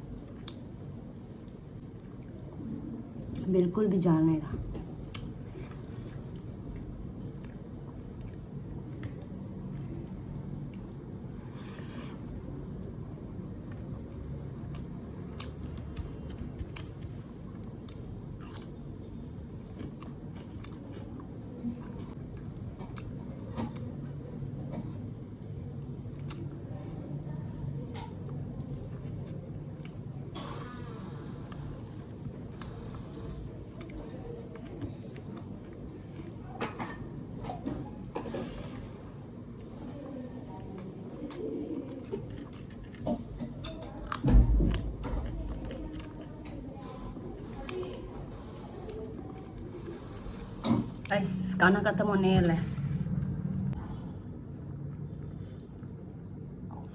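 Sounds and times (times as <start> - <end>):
chewing: 5.1 - 9.9, 13.6 - 18.8, 19.4 - 24.0, 26.1 - 26.6, 40.6 - 51.1
chewing and biting: 13.7 - 18.8, 41.3 - 46.3
steady low hum: 40.8 - 56.9
food crunching: 41.2 - 46.3.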